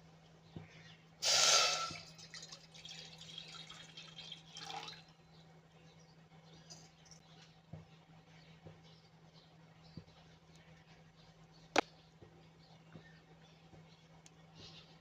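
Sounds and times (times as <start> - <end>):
loud water splash: 1.2 - 2.1
water dripping and trickling: 1.6 - 5.2.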